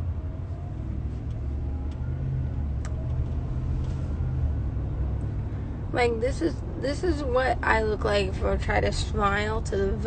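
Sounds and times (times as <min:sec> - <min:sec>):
vehicle low rumble: 0:00.0 - 0:10.0.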